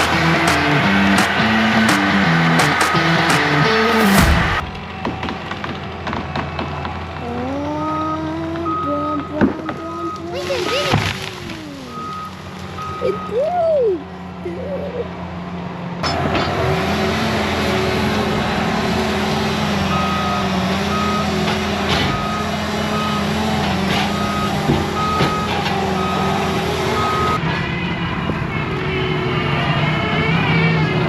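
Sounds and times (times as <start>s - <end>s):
heavy machine engine revving: 0.0s - 13.4s, 14.0s - 31.0s
reversing alarm beeping: 8.6s - 11.2s, 11.9s - 13.5s, 19.8s - 27.4s.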